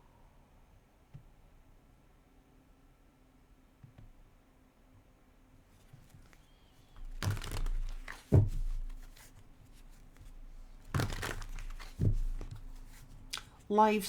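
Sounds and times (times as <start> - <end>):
rustling crinkling handling noise: 5.7 - 13.7
dull thump: 7.0 - 9.3.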